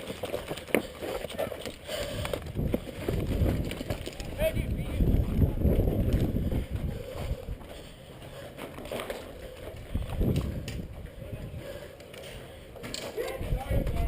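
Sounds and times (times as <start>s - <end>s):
footsteps: 0.0s - 14.0s
wind buffeting: 1.8s - 8.5s, 9.3s - 12.0s, 13.3s - 14.0s.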